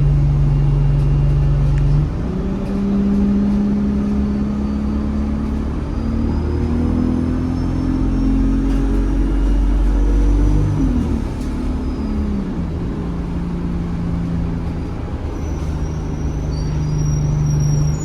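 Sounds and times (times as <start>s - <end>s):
bus engine running: 0.0s - 18.0s.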